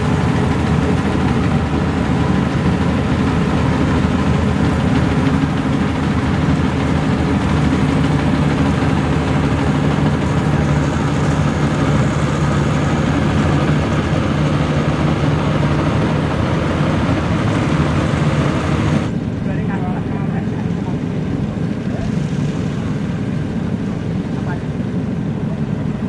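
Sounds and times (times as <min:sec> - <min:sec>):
combine harvester engine running: 0:00.0 - 0:26.0.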